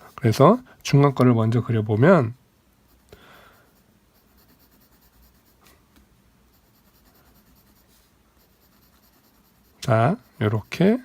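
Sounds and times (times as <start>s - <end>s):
pencil scratching on paper: 2.9s - 5.7s, 6.5s - 11.0s.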